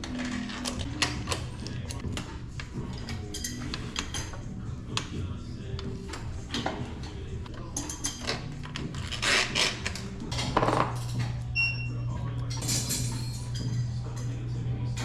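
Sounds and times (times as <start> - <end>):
metal tools clinking: 0.0 - 4.6, 6.5 - 11.4, 12.4 - 14.5.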